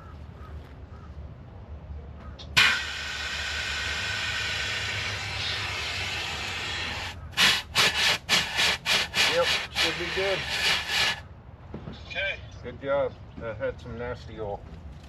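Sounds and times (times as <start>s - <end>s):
gas hissing through a line: 2.6s - 11.2s.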